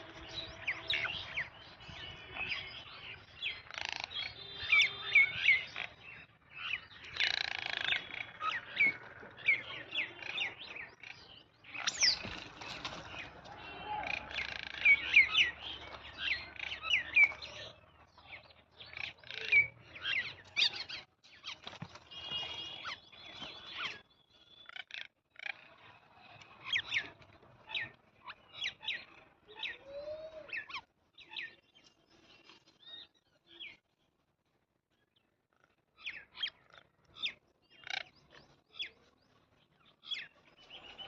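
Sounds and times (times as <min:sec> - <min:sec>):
wild birds chirping: 0:00.0 - 0:41.0
low rising and falling bird call: 0:26.2 - 0:30.8.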